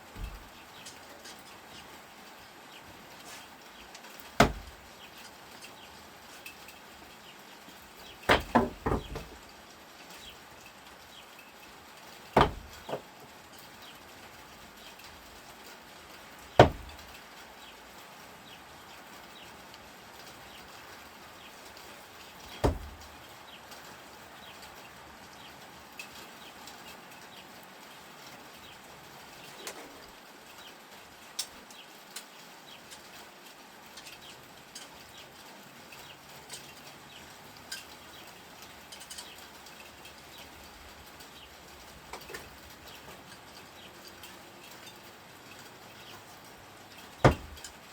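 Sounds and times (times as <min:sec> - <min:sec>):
screwdrivers striking a target: 0:04.4 - 0:04.8, 0:47.3 - 0:47.7.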